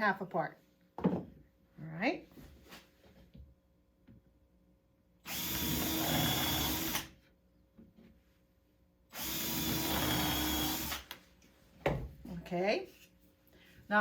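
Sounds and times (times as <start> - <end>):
power drill boring into wood: 5.3 - 7.1, 9.2 - 11.1.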